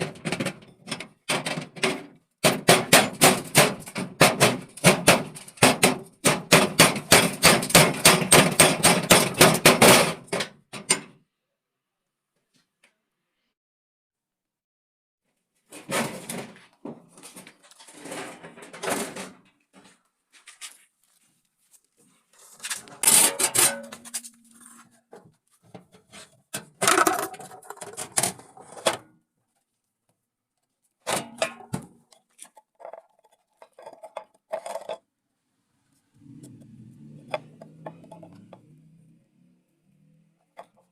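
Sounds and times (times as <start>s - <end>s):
hard parts clattering and knocking: 0.0s - 11.2s, 15.6s - 20.0s, 22.7s - 29.1s, 31.0s - 35.1s, 36.2s - 38.8s, 40.4s - 40.9s.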